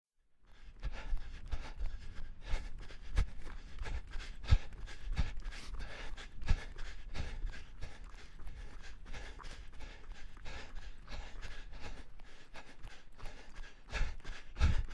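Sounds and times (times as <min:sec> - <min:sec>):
person panting hard: 0:00.5 - 0:14.9.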